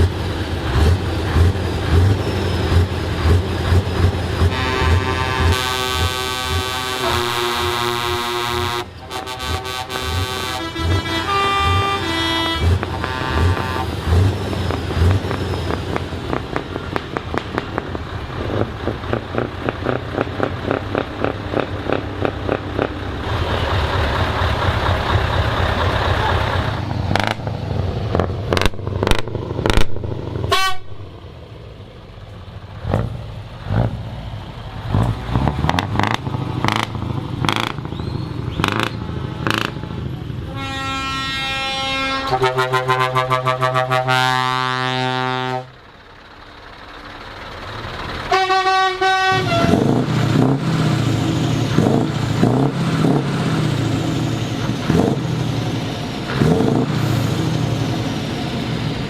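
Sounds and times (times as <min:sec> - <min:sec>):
diesel truck engine running: 0:00.0 - 0:59.0
truck air horns: 0:04.4 - 0:14.1, 0:30.5 - 0:31.1, 0:40.4 - 0:45.8, 0:48.2 - 0:50.1.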